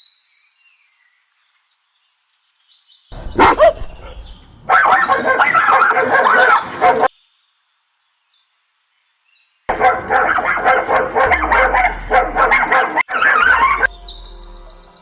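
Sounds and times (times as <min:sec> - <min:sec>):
dog barking: 0:03.2 - 0:07.1, 0:09.7 - 0:13.9.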